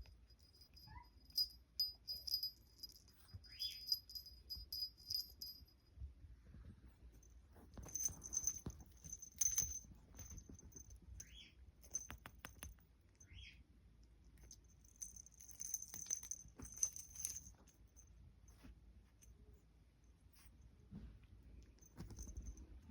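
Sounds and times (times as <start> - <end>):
small jingle bell jingling: 0.0 - 6.0, 7.2 - 13.5, 14.4 - 19.3, 21.6 - 22.9
light clicks and taps: 11.8 - 12.9.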